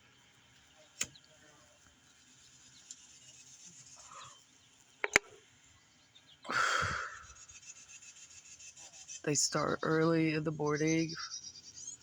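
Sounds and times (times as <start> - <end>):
sharp clicks: 5.0 - 5.4.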